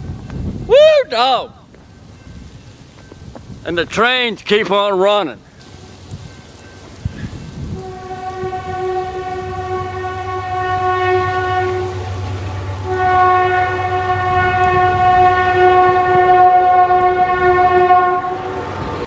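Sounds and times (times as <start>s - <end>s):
low train rumble: 0.0s - 19.0s
train horn blasts: 7.6s - 19.0s.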